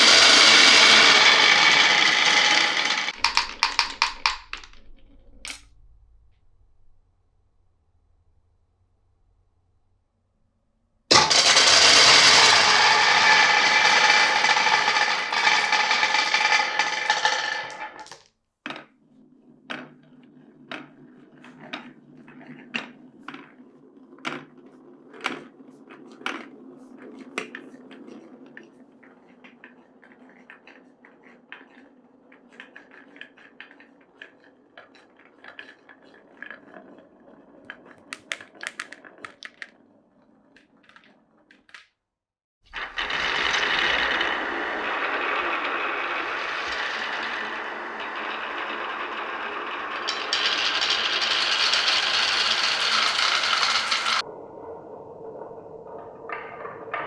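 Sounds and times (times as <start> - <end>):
marbles clattering: 0.0 - 5.6, 11.1 - 18.3, 37.7 - 41.8, 42.8 - 54.3
marbles rolling on wooden track: 0.0 - 5.6, 11.1 - 41.9, 42.7 - 54.3, 55.4 - 57.0
marble clacks: 0.0 - 5.7, 11.1 - 18.9, 19.7 - 41.9, 42.8 - 54.3.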